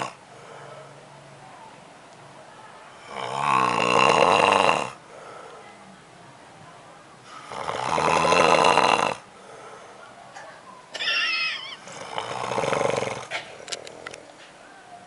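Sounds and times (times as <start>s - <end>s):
man snoring loudly: 3.1s - 5.0s, 7.4s - 9.2s, 11.8s - 13.3s.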